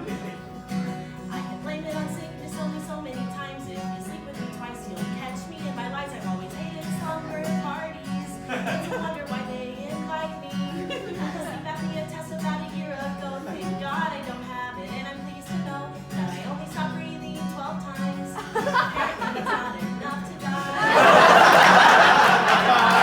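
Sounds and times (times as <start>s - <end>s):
woman singing: 0.0s - 21.6s
acoustic guitar strumming: 0.0s - 23.0s
audience applause and cheering: 20.8s - 23.0s.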